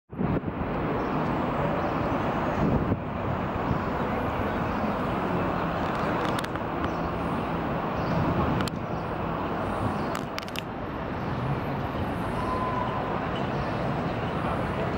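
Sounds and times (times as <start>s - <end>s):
road traffic noise: 0.1s - 14.9s.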